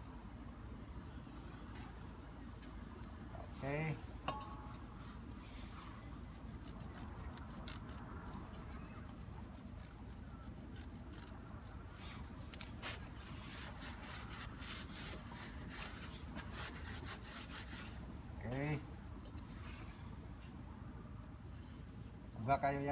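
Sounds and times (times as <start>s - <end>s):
brush scrubbing a chain: 5.6s - 12.3s.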